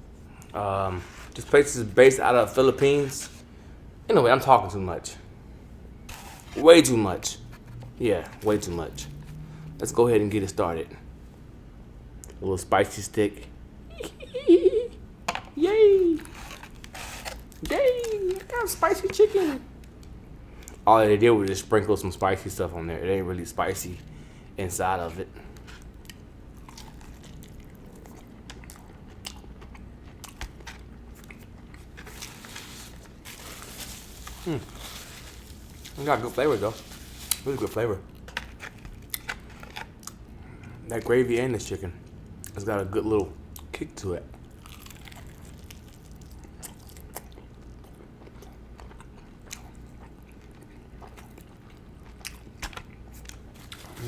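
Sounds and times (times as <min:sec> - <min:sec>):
person chewing crispy chicken: 0:25.4 - 0:40.8, 0:44.3 - 0:54.0
crunches of breading: 0:31.8 - 0:37.9, 0:44.5 - 0:47.3.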